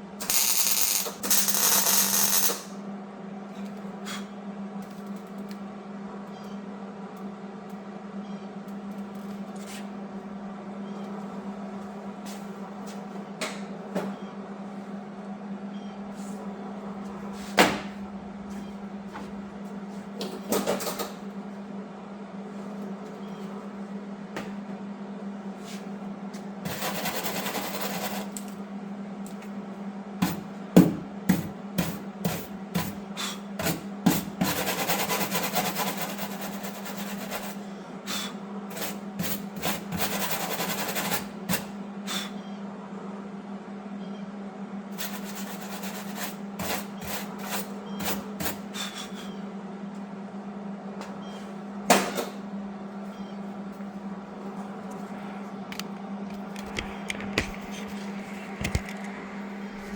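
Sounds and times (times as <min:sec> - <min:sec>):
steady low hum: 0:00.0 - 0:59.9
electric welder crackling: 0:00.2 - 0:02.8.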